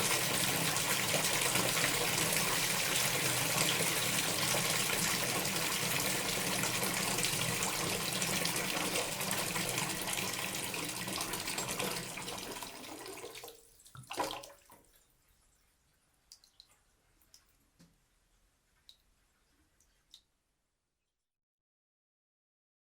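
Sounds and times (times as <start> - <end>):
tap water running into tub: 0.0 - 15.0
faint water drips: 0.0 - 21.2
water splash or gurgle: 14.0 - 14.7.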